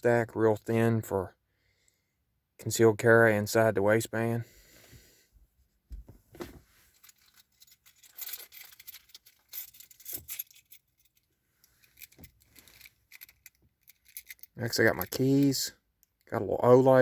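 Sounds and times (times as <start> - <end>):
small items handled: 6.0 - 16.4.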